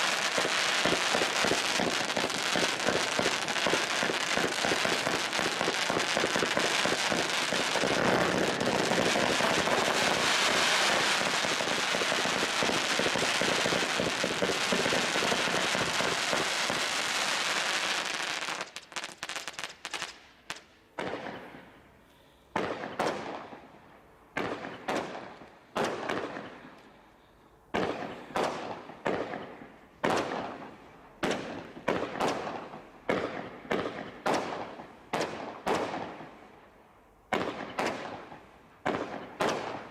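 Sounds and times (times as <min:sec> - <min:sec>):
firework bangs: 0:00.0 - 0:20.2, 0:37.3 - 0:39.9
firework crackle: 0:00.0 - 0:21.3.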